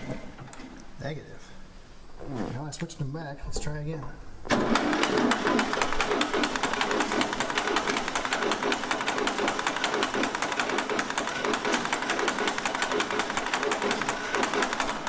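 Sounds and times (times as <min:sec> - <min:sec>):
engine cranking without firing: 0:04.4 - 0:15.0.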